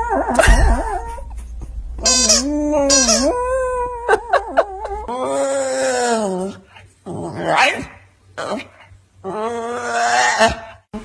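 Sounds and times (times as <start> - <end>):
dog howling: 2.0 - 6.6.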